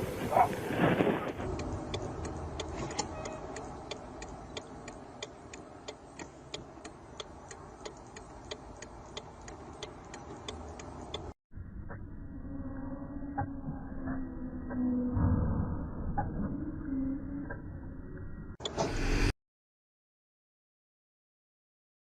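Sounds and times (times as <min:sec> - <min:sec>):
mechanical ticking: 0:01.4 - 0:11.4.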